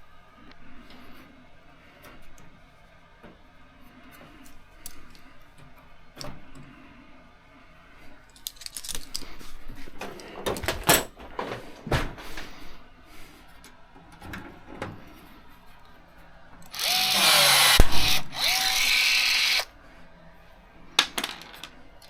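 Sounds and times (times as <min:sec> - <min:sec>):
metal parts and tools clinking: 0:08.3 - 0:09.4.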